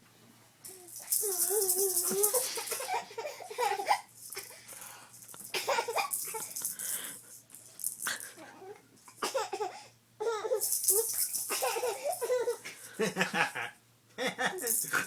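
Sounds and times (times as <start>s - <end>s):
toy ball rattling: 0.6s - 3.0s, 3.6s - 8.4s, 10.6s - 12.4s, 14.6s - 15.0s
young child laughing: 1.4s - 4.5s, 11.5s - 13.7s.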